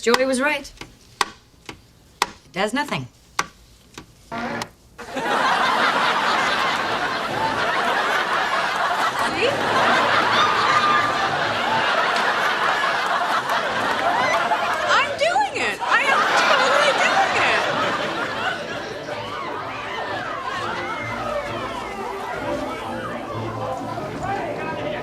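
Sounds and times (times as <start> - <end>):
studio audience laughing: 5.0 - 25.0.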